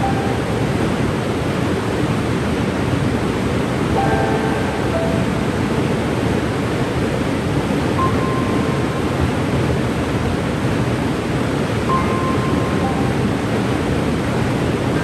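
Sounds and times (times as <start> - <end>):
waterfall rushing: 0.0 - 15.0
faint high note: 4.0 - 6.8.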